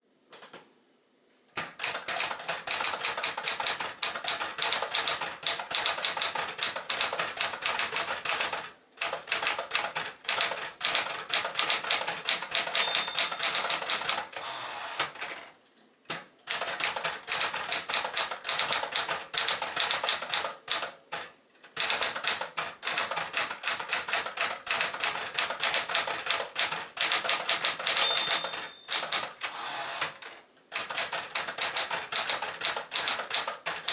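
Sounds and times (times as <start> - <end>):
typewriter key strikes: 1.6 - 14.3, 16.1 - 29.4, 30.7 - 33.9
typewriter bell ring: 12.5 - 14.1, 24.8 - 29.2.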